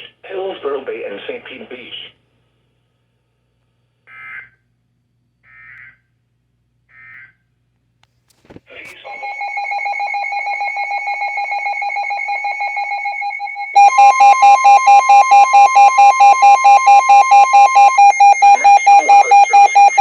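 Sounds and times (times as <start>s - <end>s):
loud beeping alarm: 9.0s - 20.0s
fast-pulsing beep tone: 18.3s - 20.0s.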